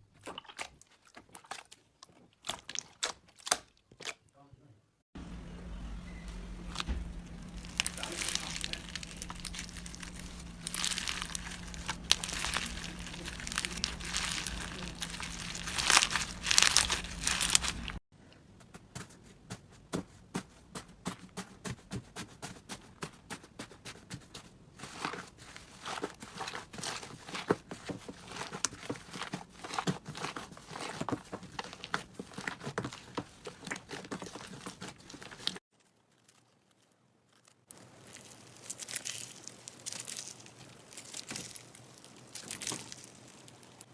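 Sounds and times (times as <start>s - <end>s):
slime crackling and popping: 6.7s - 18.0s, 25.8s - 43.9s.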